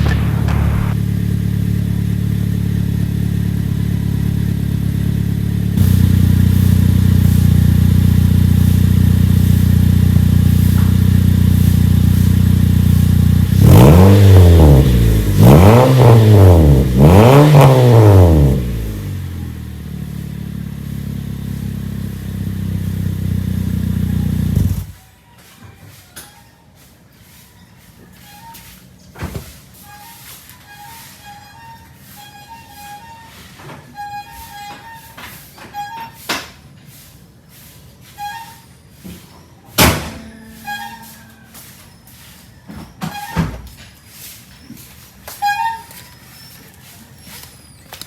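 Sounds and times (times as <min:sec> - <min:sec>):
car engine idling and revving: 0:00.0 - 0:25.0.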